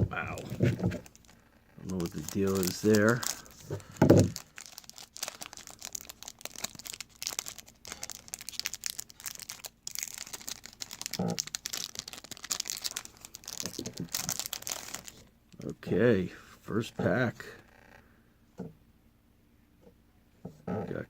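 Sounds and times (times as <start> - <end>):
plastic wrappers crinkling: 0.2 - 15.7.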